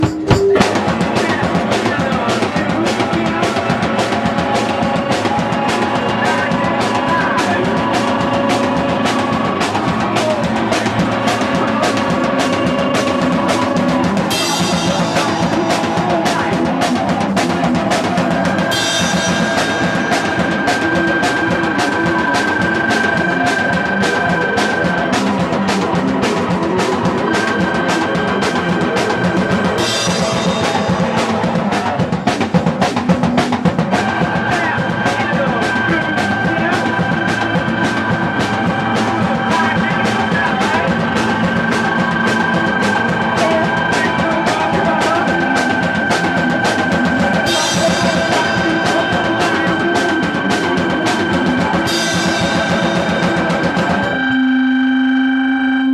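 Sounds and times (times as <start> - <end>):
fast drum-kit beat: 0.0 - 54.9
live punk band playing: 0.0 - 55.9
high held synth note: 51.8 - 55.9.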